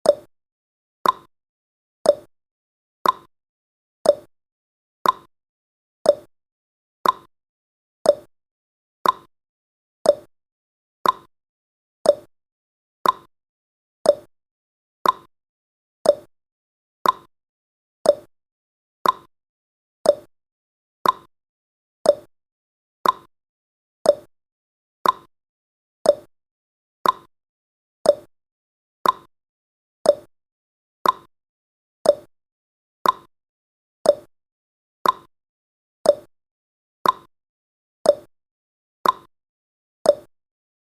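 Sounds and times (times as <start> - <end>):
clock ticking: 3.0 - 3.3, 5.0 - 5.3, 7.0 - 7.3, 9.0 - 9.3, 11.0 - 11.3, 13.0 - 13.3, 15.0 - 15.3, 16.1 - 16.3, 17.0 - 17.3, 18.1 - 18.3, 19.0 - 19.3, 20.1 - 20.3, 21.0 - 21.3, 22.1 - 22.3, 23.0 - 23.3, 24.1 - 24.3, 25.0 - 25.3, 26.1 - 26.3, 27.0 - 27.3, 29.0 - 29.3, 30.1 - 30.3, 31.0 - 31.3, 32.1 - 32.3, 33.0 - 33.3, 34.1 - 34.3, 35.0 - 35.3, 36.1 - 36.3, 37.0 - 37.3, 38.1 - 38.3, 39.0 - 39.3, 40.1 - 40.3.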